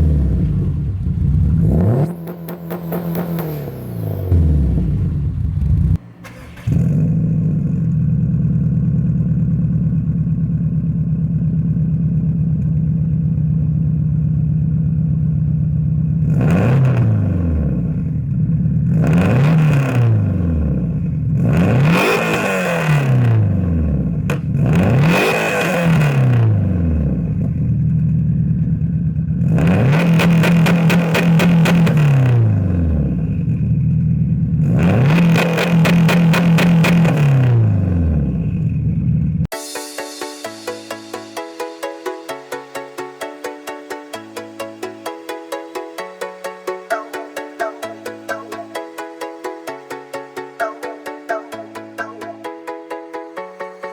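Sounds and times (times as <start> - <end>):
car engine running and revving: 0.0 - 39.4.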